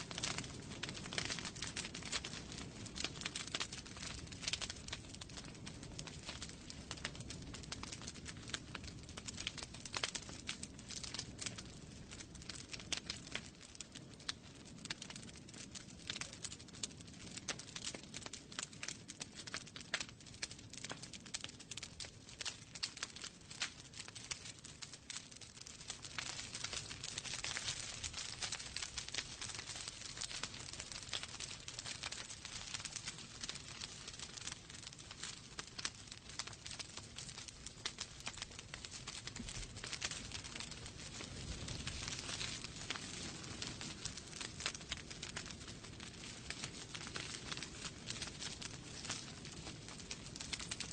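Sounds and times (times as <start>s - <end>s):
fire snaps and pops: 0.0s - 50.9s
flame rushing: 37.9s - 50.8s.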